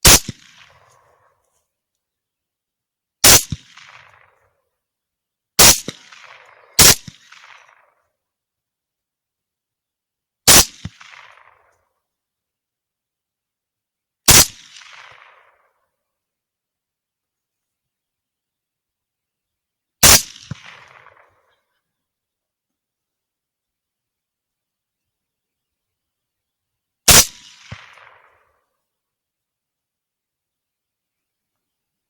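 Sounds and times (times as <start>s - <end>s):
suppressed rifle shots: 0.0s - 1.0s, 3.2s - 4.3s, 5.6s - 7.8s, 10.5s - 11.6s, 14.3s - 15.6s, 20.0s - 21.4s, 27.1s - 28.4s.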